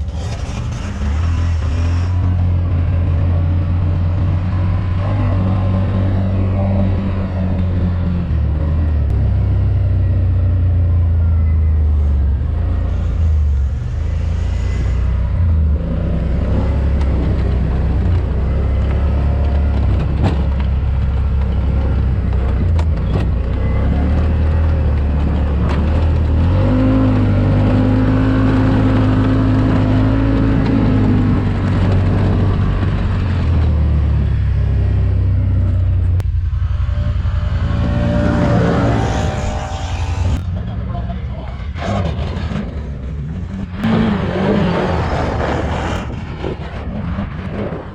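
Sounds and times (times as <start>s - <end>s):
atv engine revving: 0.0s - 40.4s
wind rumbling on microphone: 11.7s - 40.7s, 42.9s - 47.9s.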